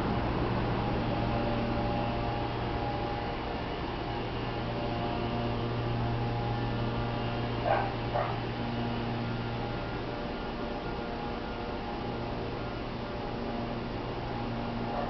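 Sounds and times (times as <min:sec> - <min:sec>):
steady electrical hum: 0:00.0 - 0:15.0
dog barks: 0:07.6 - 0:08.4.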